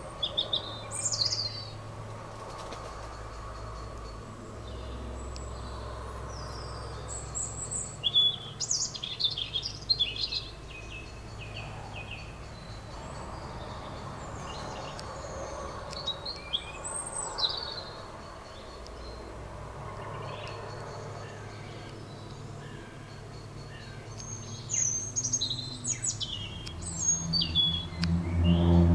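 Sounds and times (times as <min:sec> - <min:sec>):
songbirds chirping and trilling: 0:00.0 - 0:28.9.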